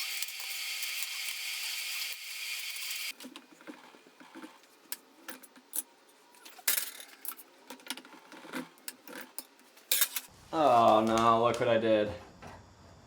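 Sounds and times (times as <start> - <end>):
metal pieces clinking: 5.2 - 10.3.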